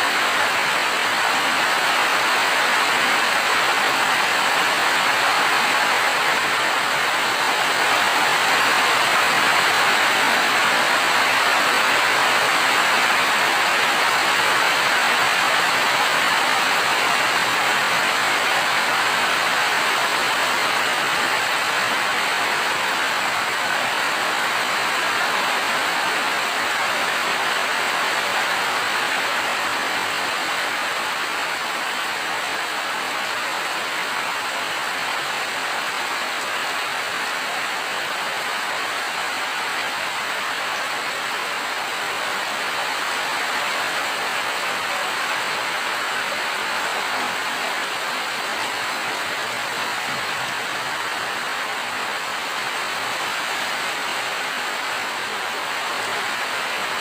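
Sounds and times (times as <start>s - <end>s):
heavy rain hiss: 0.0s - 57.0s.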